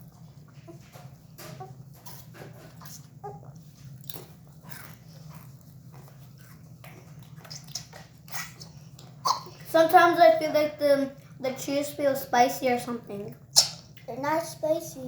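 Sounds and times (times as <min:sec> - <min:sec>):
chewing and crunching snack: 0:00.0 - 0:09.8
steady low hum: 0:00.0 - 0:15.0.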